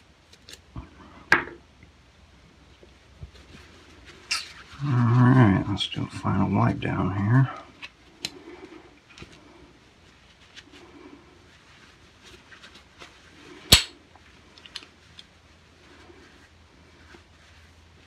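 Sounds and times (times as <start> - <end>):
cloth wiping gun frame: 2.6 - 18.0.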